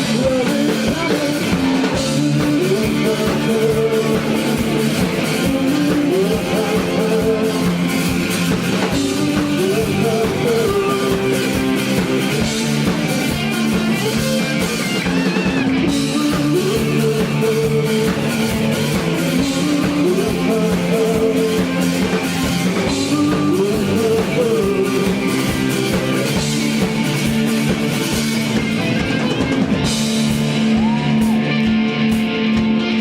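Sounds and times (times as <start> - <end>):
electric guitar: 0.0 - 33.0
rock band playing live: 0.0 - 33.0.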